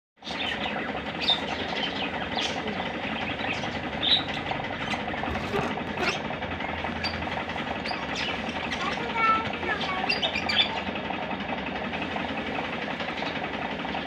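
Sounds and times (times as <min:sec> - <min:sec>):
lovebirds chattering and chirping: 0:00.2 - 0:11.0.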